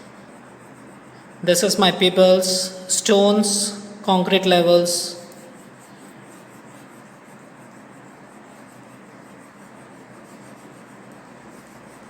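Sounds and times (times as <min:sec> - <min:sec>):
crayon rubbing on paper: 0:00.0 - 0:03.1, 0:03.7 - 0:12.0.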